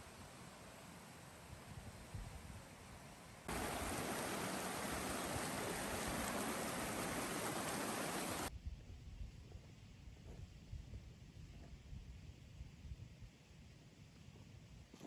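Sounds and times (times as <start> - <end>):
stream water rushing: 3.5 - 8.5.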